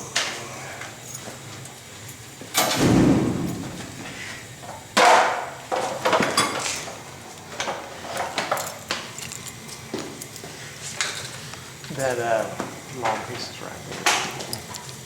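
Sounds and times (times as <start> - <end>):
heavy thud: 2.8 - 4.7
tools and parts clattering: 7.6 - 9.6.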